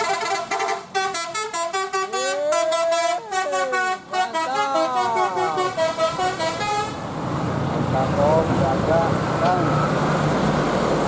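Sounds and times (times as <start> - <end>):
multi-tone bus horn melody: 0.0 - 7.1.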